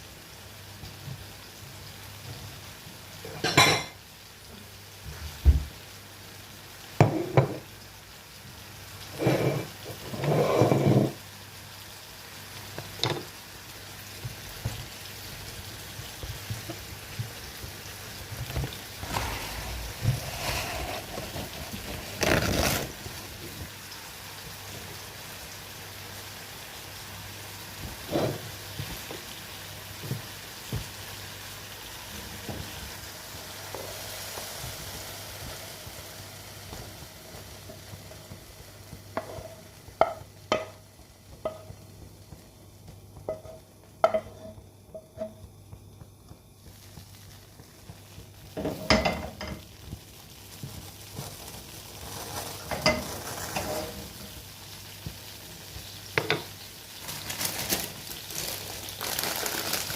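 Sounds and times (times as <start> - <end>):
food sizzling in a pan: 0.0 - 59.9
utensil knocking against pan: 40.0 - 40.8.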